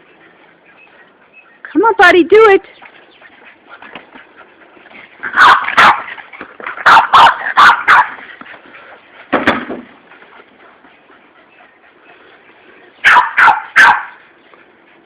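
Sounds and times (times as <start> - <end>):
dog barking: 5.3 - 6.1, 6.8 - 8.2, 13.0 - 14.2.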